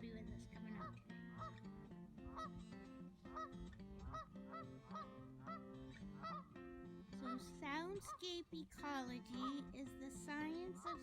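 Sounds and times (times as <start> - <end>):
geese honking: 0.7 - 1.6, 2.3 - 2.6, 3.3 - 6.6.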